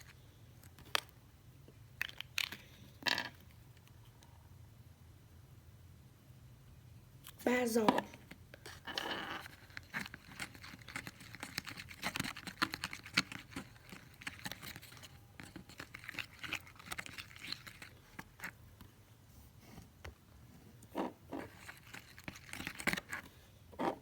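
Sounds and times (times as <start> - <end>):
spoon stirring slime: 7.9 - 18.8, 20.8 - 24.0.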